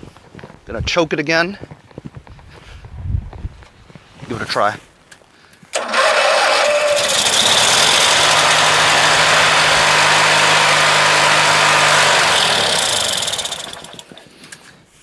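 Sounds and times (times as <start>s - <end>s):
engine starter cranking: 5.8s - 14.3s
lawn tractor engine running: 5.8s - 14.3s.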